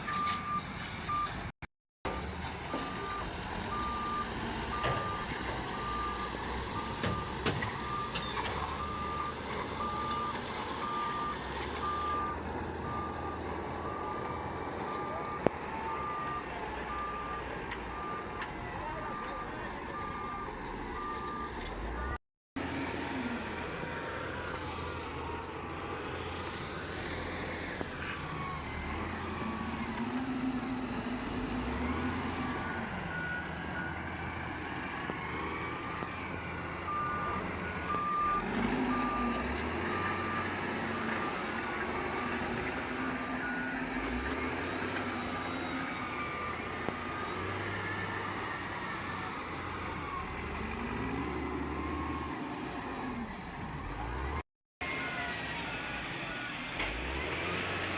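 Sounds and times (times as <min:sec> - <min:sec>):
reversing alarm beeping: 0:00.1 - 0:01.4, 0:02.2 - 0:18.3, 0:36.9 - 0:40.6
diesel engine revving: 0:02.1 - 0:57.9.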